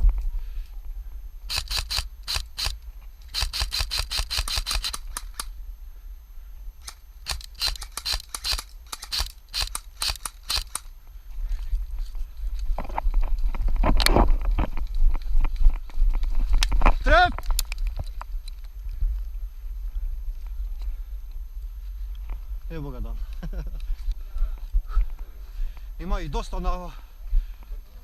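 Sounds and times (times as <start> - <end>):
airsoft gun shots: 1.5 - 5.5, 6.8 - 10.8.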